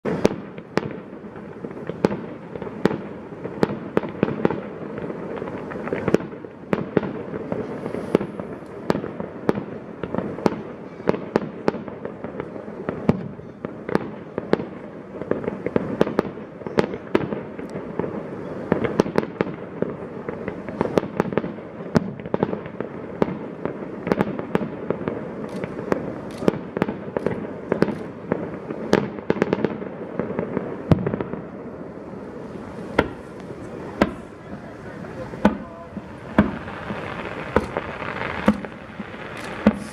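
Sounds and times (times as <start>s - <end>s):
fireworks bangs: 0.0s - 39.9s
rumble of echoing reports: 32.4s - 37.1s.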